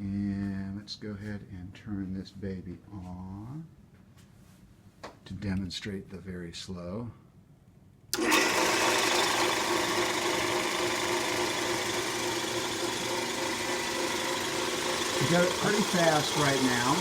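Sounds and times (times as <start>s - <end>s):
drill press running: 8.2s - 17.0s.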